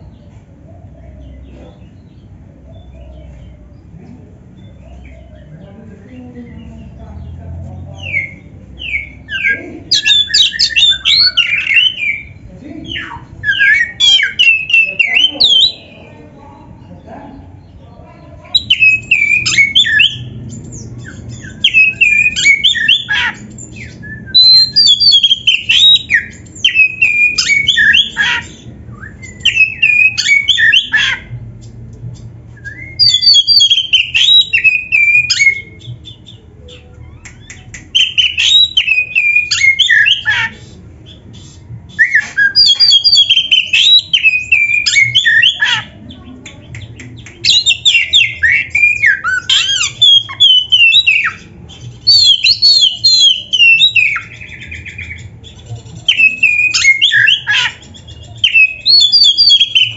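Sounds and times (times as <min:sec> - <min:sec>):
bird singing whistles: 0:18.6 - 0:20.3, 0:21.0 - 0:23.1, 0:23.7 - 0:28.2, 0:28.9 - 0:30.9, 0:32.6 - 0:40.2, 0:41.1 - 0:45.6, 0:47.4 - 0:55.3, 0:56.1 - 0:59.9.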